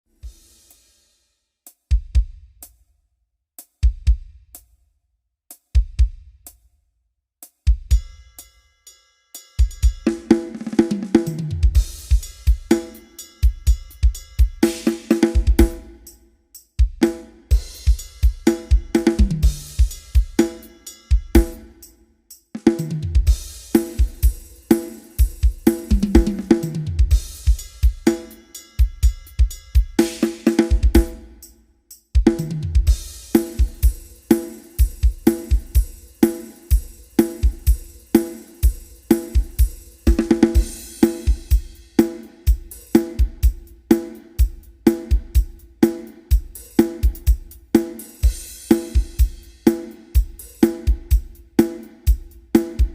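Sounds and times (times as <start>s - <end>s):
drum kit groove: 0.0s - 3.0s, 3.6s - 4.9s, 5.5s - 6.8s, 7.4s - 8.7s, 9.4s - 52.9s
tom drum fills: 9.6s - 15.9s, 16.8s - 21.7s, 22.7s - 31.2s, 32.2s - 52.9s.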